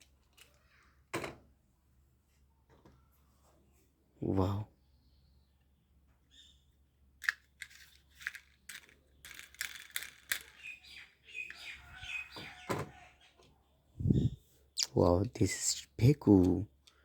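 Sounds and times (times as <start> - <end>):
toy vehicles clicking and rattling: 0.0 - 0.9, 7.2 - 11.8
high squeaky chirps: 10.4 - 13.3.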